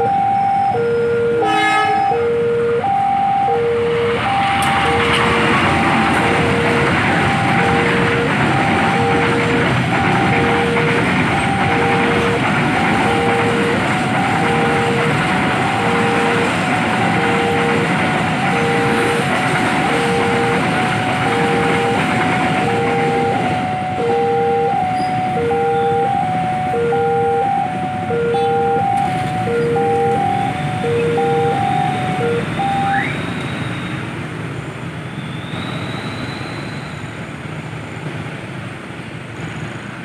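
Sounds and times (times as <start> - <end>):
two-tone crossing alarm beep: 0.0 - 34.1
higher beep: 2.0 - 15.0, 22.7 - 33.4
train wheels on rails: 3.8 - 40.0.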